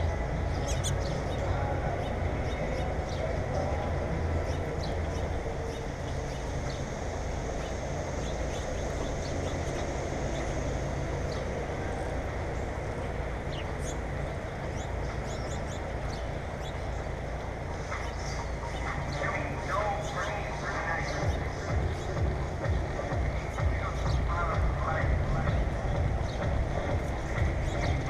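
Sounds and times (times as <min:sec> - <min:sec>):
birds chirping: 0:00.0 - 0:28.0
steady low rumble: 0:00.0 - 0:28.0.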